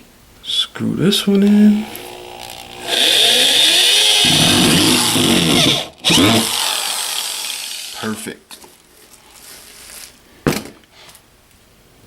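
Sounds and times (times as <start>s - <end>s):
power screwdriver motor running: 1.7s - 8.0s.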